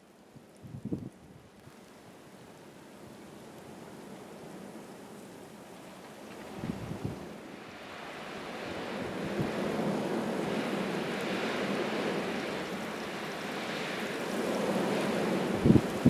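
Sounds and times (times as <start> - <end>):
blizzard wind gusting: 6.5 - 16.0.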